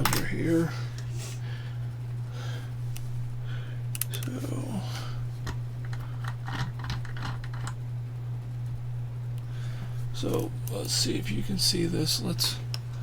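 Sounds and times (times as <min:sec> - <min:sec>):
steady low hum: 0:00.0 - 0:13.0
plastic clicks and rattles: 0:05.8 - 0:07.8.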